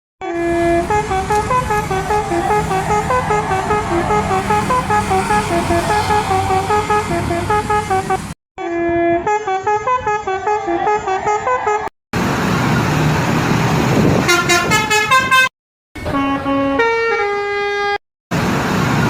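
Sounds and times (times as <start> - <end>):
multi-tone musical bus horn: 0.2 - 11.9, 14.2 - 18.0
low rumble: 0.3 - 8.4.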